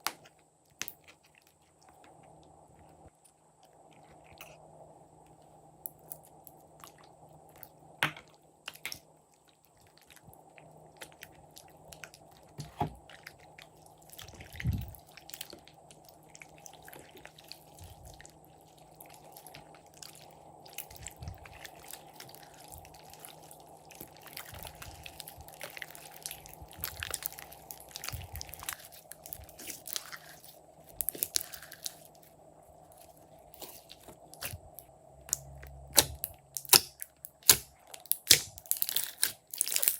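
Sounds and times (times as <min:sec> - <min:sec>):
slime crackling and popping: 0:20.6 - 0:32.2, 0:33.6 - 0:39.9.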